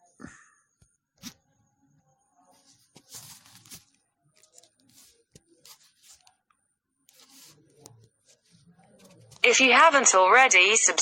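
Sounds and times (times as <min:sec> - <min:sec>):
faint rustles and clicks: 0:02.5 - 0:06.4, 0:07.1 - 0:09.5.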